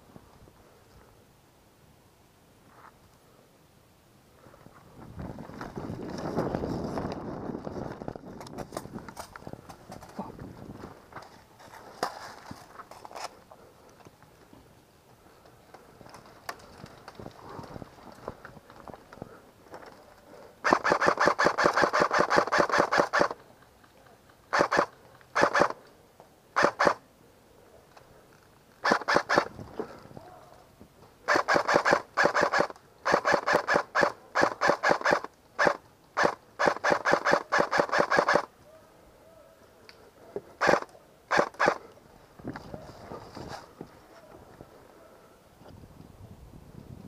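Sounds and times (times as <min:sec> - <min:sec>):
airsoft gun firing bursts: 0:20.6 - 0:23.4, 0:24.5 - 0:25.8, 0:26.6 - 0:27.0, 0:28.8 - 0:29.5, 0:31.3 - 0:38.5, 0:40.6 - 0:41.8.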